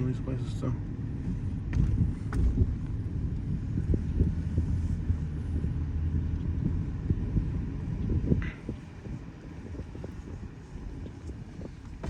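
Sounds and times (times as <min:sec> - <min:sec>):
car engine and road noise: 0:00.0 - 0:12.0
suspension thumps: 0:00.8 - 0:12.0.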